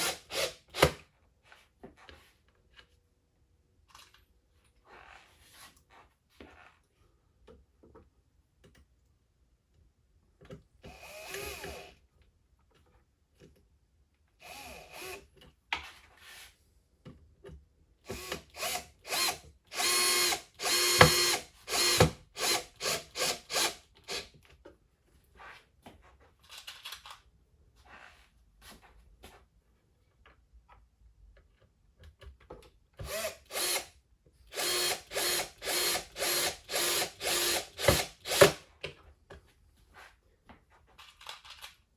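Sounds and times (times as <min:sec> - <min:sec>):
power drill driving screws into wood: 0:00.0 - 0:01.0, 0:10.9 - 0:12.0, 0:14.4 - 0:15.2, 0:18.1 - 0:24.3, 0:33.0 - 0:38.7.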